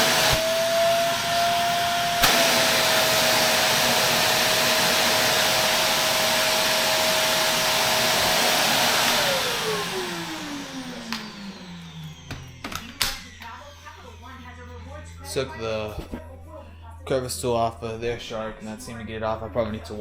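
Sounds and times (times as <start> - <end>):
vacuum motor winding down: 0.0 - 13.7
vacuum cleaner whining: 0.0 - 14.4.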